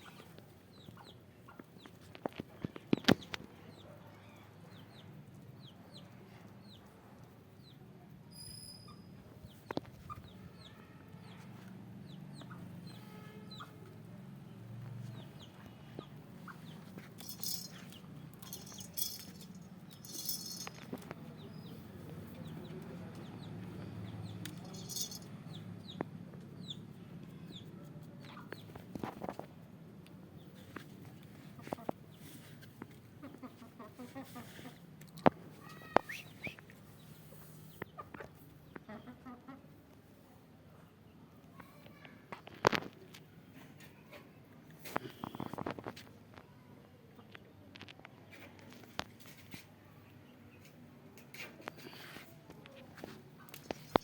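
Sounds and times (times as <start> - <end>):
rustling: 16.8 - 21.1, 24.5 - 25.3
chickens clucking: 33.2 - 34.8, 37.3 - 39.7.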